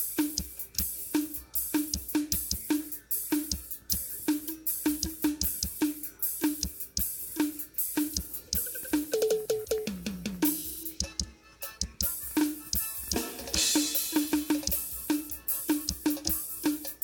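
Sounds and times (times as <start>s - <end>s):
drum kit beat: 0.0s - 17.0s.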